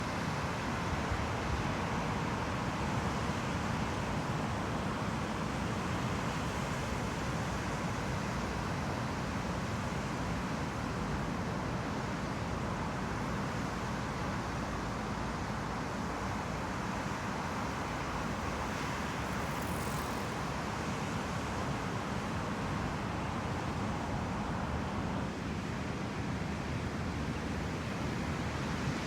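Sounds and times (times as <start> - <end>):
ocean surf breaking: 16.6 - 21.6.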